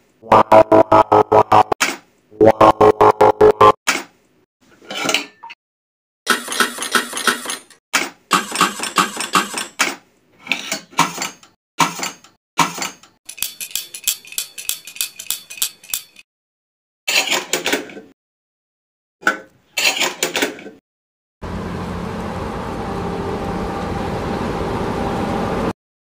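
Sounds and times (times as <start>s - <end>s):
metallic clinking and clattering: 13.3s - 16.2s.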